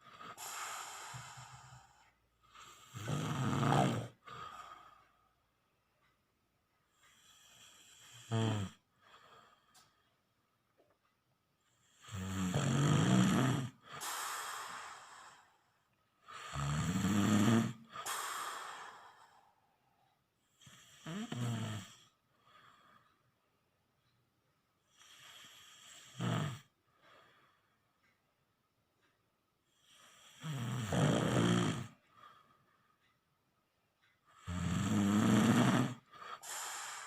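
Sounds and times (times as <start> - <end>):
person snoring: 0.0 - 5.0, 7.1 - 8.8, 11.8 - 15.6, 16.3 - 19.5, 20.6 - 22.2, 24.9 - 26.7, 29.8 - 32.0, 34.4 - 37.0
breathy exhale: 0.2 - 2.8, 13.9 - 15.7, 18.0 - 19.8, 36.2 - 37.0.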